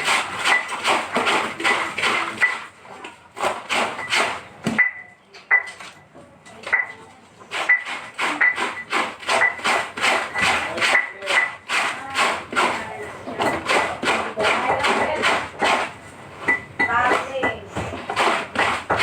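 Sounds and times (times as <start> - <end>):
clothes scrubbed by hand: 0.0 - 2.4.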